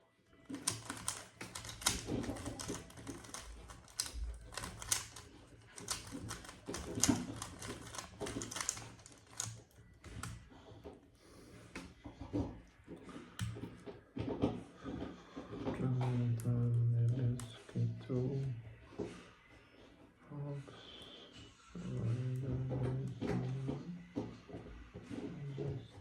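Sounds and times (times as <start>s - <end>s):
puzzle cube plastic clicks: 0.5s - 10.4s.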